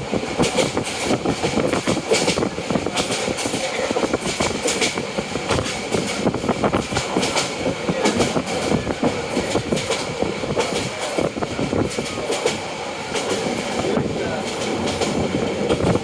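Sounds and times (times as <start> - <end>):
passenger train clattering on track: 0.0 - 16.0.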